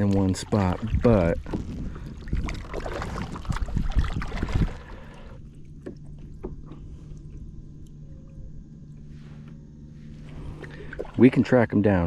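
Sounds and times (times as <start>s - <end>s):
water splashing against kayak: 0.0s - 7.9s, 10.0s - 11.6s
low steady hum: 0.0s - 12.0s.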